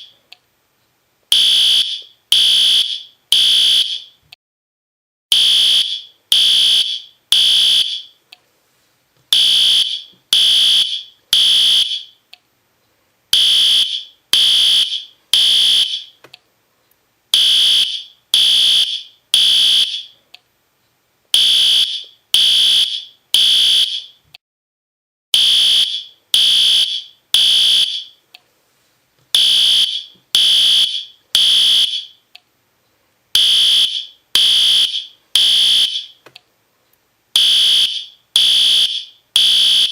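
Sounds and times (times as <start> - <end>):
fire alarm horn beeping: 1.3 - 4.2, 5.3 - 8.2, 9.3 - 12.2, 13.4 - 16.2, 17.4 - 20.2, 21.4 - 24.2, 25.4 - 28.2, 29.4 - 32.2, 33.4 - 36.2, 37.4 - 39.9.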